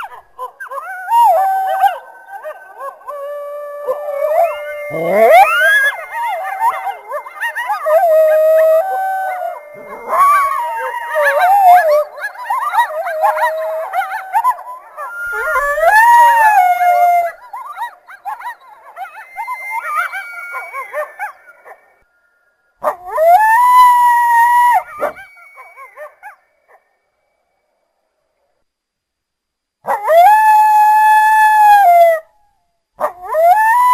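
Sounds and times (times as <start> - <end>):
coyotes howling and yipping: 0.0 - 26.9, 29.9 - 32.3, 33.0 - 33.9
single long howl: 0.7 - 17.7, 18.5 - 22.0, 23.0 - 26.2.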